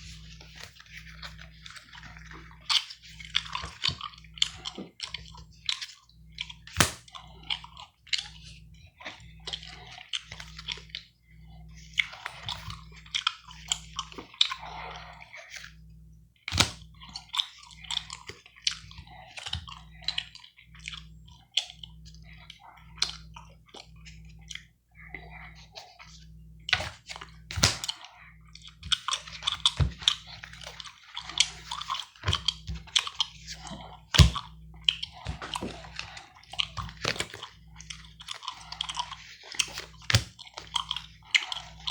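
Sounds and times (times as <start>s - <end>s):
gum chewing smacks: 16.6s - 24.7s, 26.8s - 41.9s.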